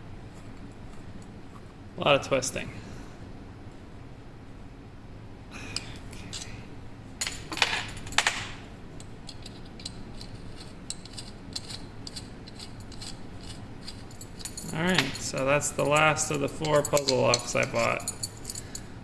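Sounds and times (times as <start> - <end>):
metal puzzle parts clinking: 9.3 - 18.9.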